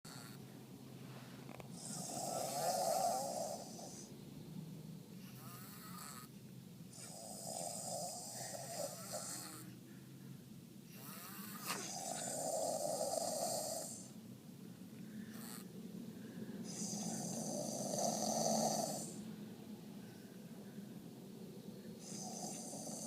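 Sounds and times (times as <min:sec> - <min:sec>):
people snoring loudly: 0:00.1 - 0:00.4, 0:01.7 - 0:04.1, 0:05.2 - 0:06.3, 0:07.0 - 0:09.8, 0:10.9 - 0:14.2, 0:15.3 - 0:15.7, 0:16.6 - 0:19.2, 0:22.0 - 0:23.0
quiet breathing: 0:00.1 - 0:04.3, 0:05.0 - 0:23.0.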